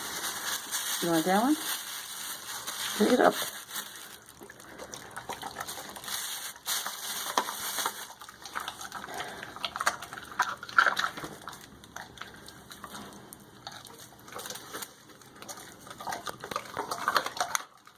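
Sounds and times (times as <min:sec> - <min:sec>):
dog chewing wet crunching: 0:00.0 - 0:17.9.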